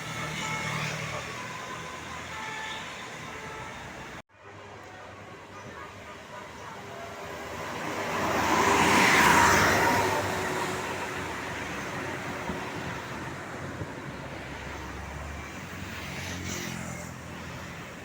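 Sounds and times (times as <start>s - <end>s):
traffic noise: 0.0s - 18.0s
vehicle passing close by: 7.2s - 17.2s.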